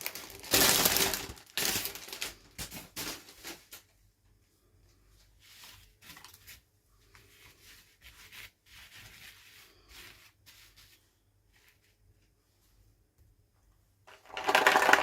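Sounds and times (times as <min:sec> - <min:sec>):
packaging rustling: 0:00.0 - 0:03.9, 0:14.2 - 0:15.0.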